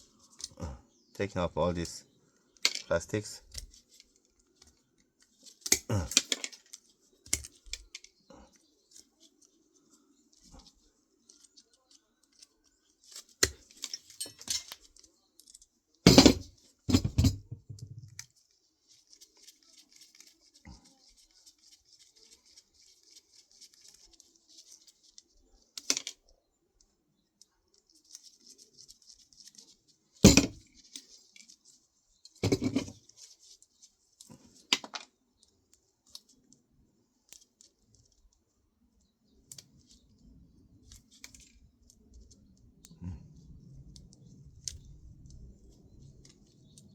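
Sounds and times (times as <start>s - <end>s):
light scratchy rustling: 1.2s - 26.1s, 27.4s - 34.8s
metal and plastic parts clacking: 2.6s - 8.2s, 10.3s - 18.4s, 25.8s - 26.2s, 27.8s - 31.7s, 32.3s - 33.6s, 34.2s - 36.5s, 37.3s - 38.1s.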